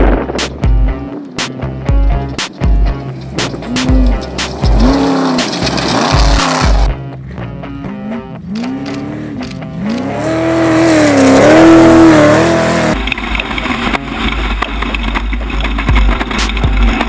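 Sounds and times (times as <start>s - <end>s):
noisy rattling with clicks: 2.2s - 6.9s, 13.0s - 17.0s
race vehicle engine revving: 3.0s - 17.0s.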